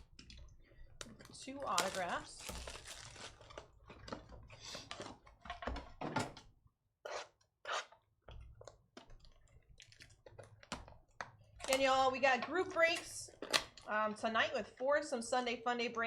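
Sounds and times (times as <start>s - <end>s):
card box wrappers crinkling: 1.1s - 3.7s.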